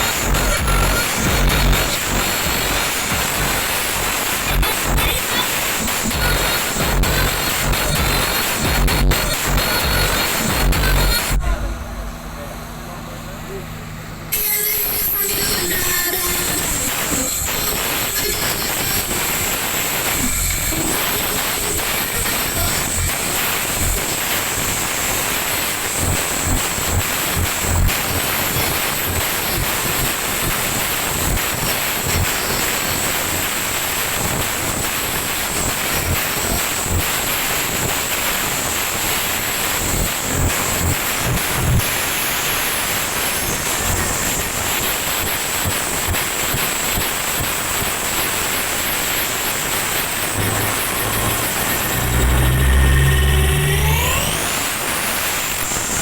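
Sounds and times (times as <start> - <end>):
distorted loud sound system: 0.0 - 56.0
deep bass thumps: 6.2 - 13.3.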